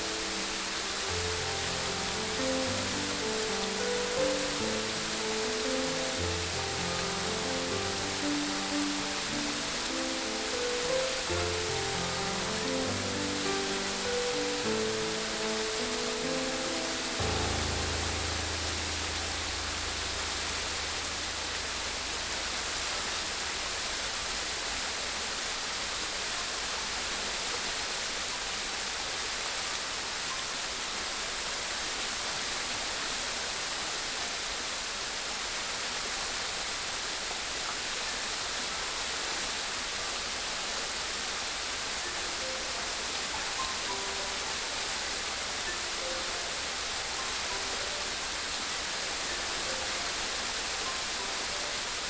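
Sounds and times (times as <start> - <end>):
background music: 0.0 - 23.4
rushing water: 0.0 - 52.0.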